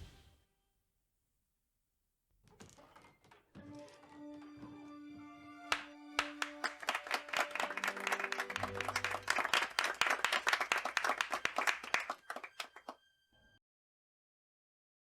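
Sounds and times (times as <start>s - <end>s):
faint music: 3.6s - 13.5s
audience applauding: 5.2s - 13.0s.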